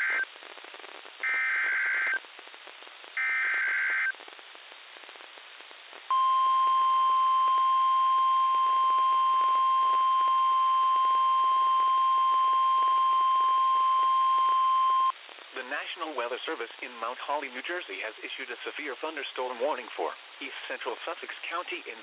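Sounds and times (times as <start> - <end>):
steady warning alarm tone: 3.2 - 4.1
radio hiss: 14.7 - 22.0.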